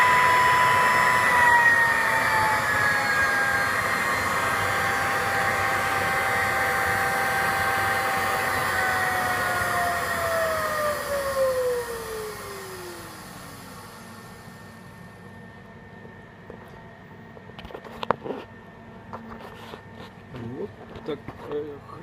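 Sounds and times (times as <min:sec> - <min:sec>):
electric fan whining: 0:00.0 - 0:22.0.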